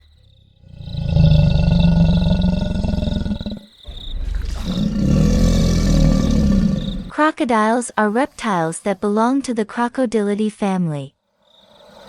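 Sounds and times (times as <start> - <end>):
crocodile growling: 0.0 - 7.2.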